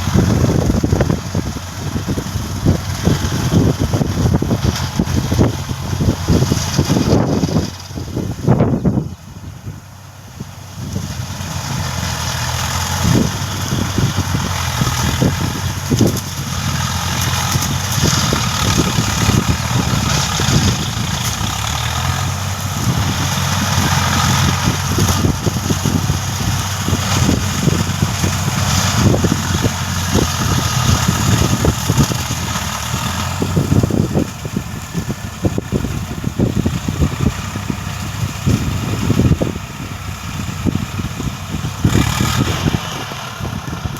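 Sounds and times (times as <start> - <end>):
tractor diesel engine running: 0.0 - 43.9.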